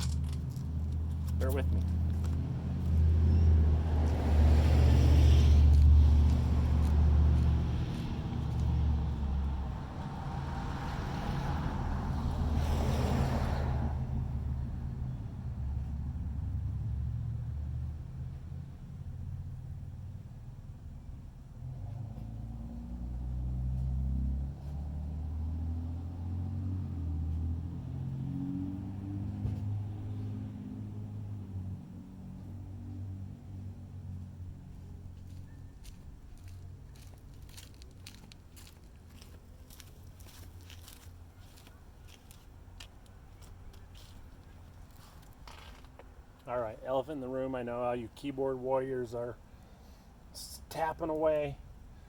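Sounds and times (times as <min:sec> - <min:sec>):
low engine rumble: 0:00.0 - 0:10.4
engine rumble with humming tone: 0:00.0 - 0:52.0.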